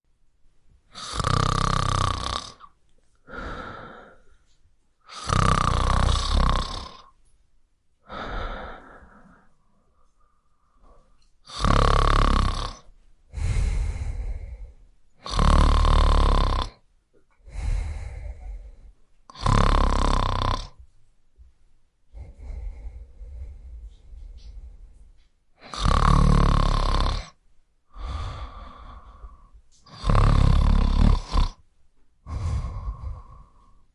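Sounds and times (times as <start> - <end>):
man snoring: 0.9 - 2.7, 5.1 - 7.1, 11.5 - 16.8, 17.5 - 20.8, 22.1 - 24.6, 25.6 - 31.6, 32.3 - 33.8
soft breaths: 2.5 - 7.4, 8.0 - 31.6, 32.2 - 33.9.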